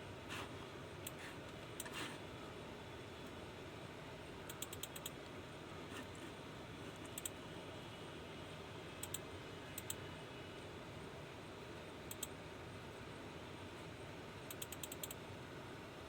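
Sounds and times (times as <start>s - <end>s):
keyboard and mouse clicks: 4.5s - 5.2s, 7.1s - 7.4s, 12.1s - 12.3s, 14.5s - 15.2s.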